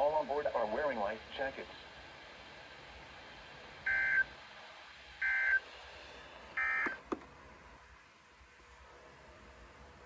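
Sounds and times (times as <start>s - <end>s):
two-tone electronic bursts: 3.9s - 4.3s, 5.2s - 5.6s, 6.6s - 7.0s.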